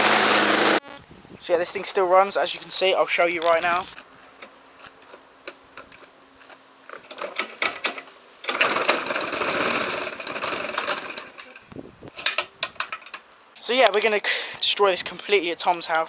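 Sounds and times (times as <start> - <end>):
lawnmower engine starting: 0.0 - 0.8, 1.5 - 13.3.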